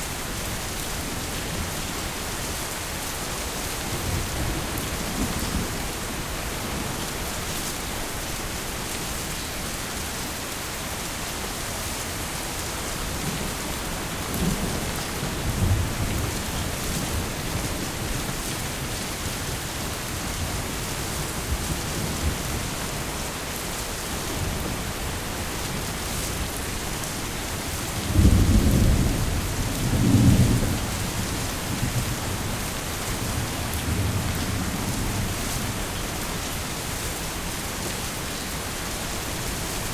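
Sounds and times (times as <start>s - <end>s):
heavy rain falling: 0.0s - 39.9s
thunder rumbling: 12.8s - 23.2s, 23.9s - 39.9s.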